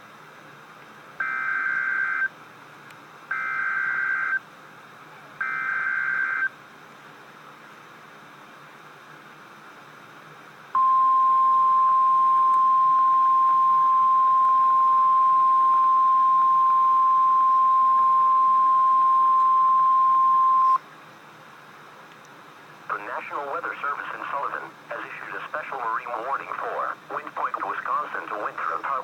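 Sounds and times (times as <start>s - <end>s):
steady alarm tone: 1.2s - 2.3s, 3.3s - 4.4s, 5.4s - 6.5s, 10.8s - 20.8s.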